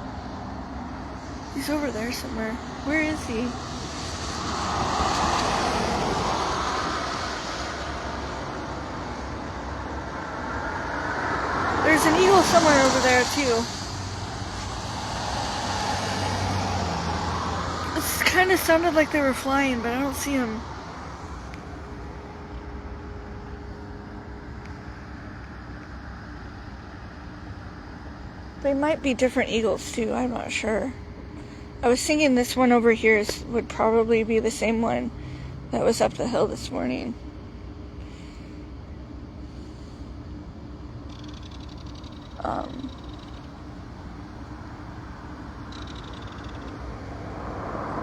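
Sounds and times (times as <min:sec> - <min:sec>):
passing vehicle rushing: 0:00.0 - 0:23.4, 0:42.4 - 0:48.0
wind rumble: 0:00.0 - 0:37.8, 0:40.1 - 0:48.0
distant engine noise: 0:00.0 - 0:48.0
faint steady hum: 0:00.0 - 0:48.0.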